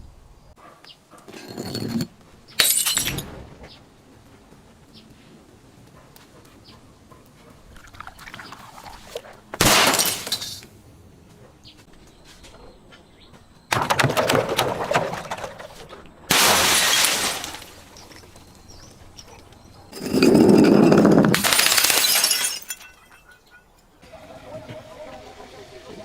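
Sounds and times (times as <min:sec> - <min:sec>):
glass breaking: 0:01.7 - 0:03.4, 0:09.6 - 0:10.6, 0:16.3 - 0:18.4, 0:20.0 - 0:23.7
tinkling glass fragments: 0:20.0 - 0:23.8.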